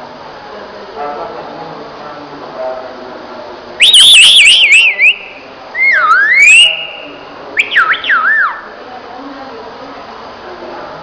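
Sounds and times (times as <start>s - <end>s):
parrot whistling: 3.8s - 8.8s.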